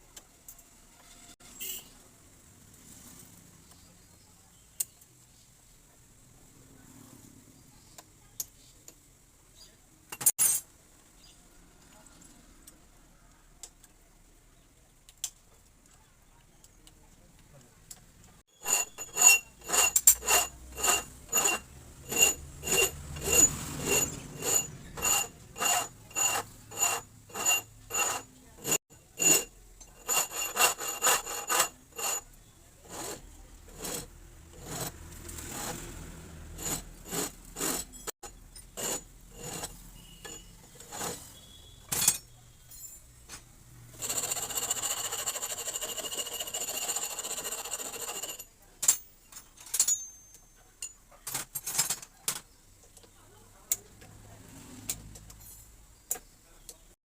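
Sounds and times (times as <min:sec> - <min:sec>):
hand rasping metal part: 0:18.6 - 0:35.8, 0:36.6 - 0:41.3, 0:44.0 - 0:48.4
faint metallic ring: 0:39.6 - 0:40.6, 0:48.2 - 0:51.1.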